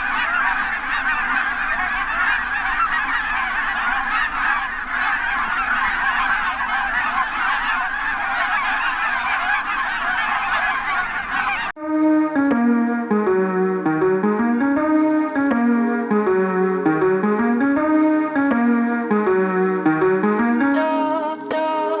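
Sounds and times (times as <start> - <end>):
flock of geese honking: 0.0 - 12.4, 14.8 - 15.5, 17.9 - 18.5, 20.8 - 21.6.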